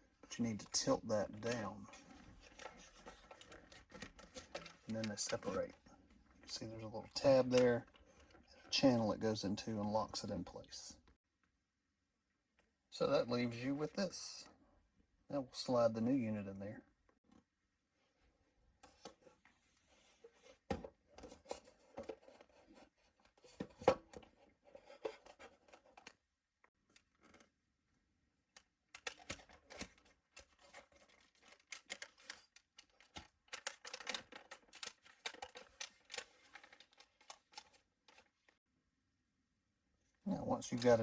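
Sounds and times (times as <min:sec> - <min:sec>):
hard plastic scraping and clicking: 0:00.3 - 0:08.8, 0:20.2 - 0:26.2, 0:28.5 - 0:38.6.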